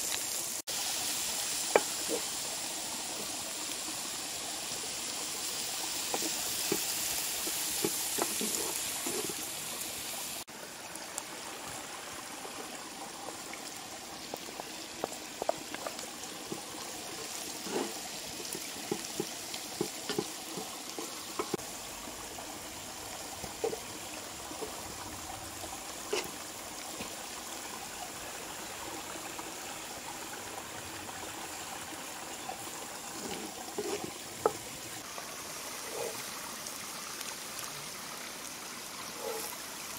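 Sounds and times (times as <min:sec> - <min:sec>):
flowing water rushing: 0:00.0 - 0:39.9.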